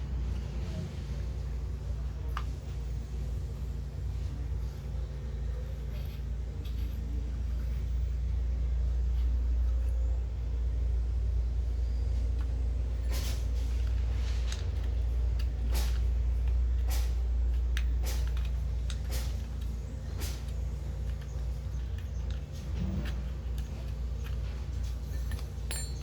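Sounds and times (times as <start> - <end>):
low rumble and hum: 0.0 - 26.0.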